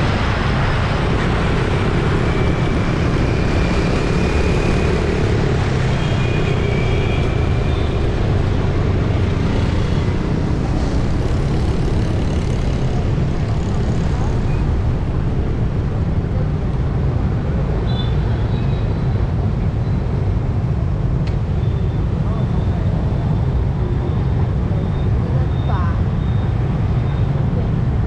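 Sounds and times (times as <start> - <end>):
city street traffic: 0.0 - 28.0.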